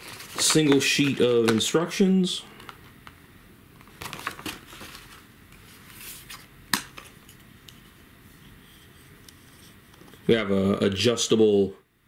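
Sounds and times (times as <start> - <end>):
paper rustling: 0.0 - 1.7, 3.8 - 6.5.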